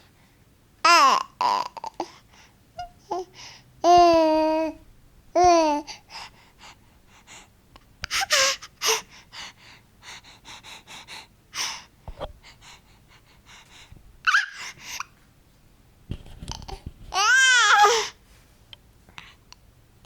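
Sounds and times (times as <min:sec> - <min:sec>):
baby gasping and panting: 0:05.4 - 0:15.2, 0:16.7 - 0:18.2
baby squeaking: 0:14.3 - 0:14.6.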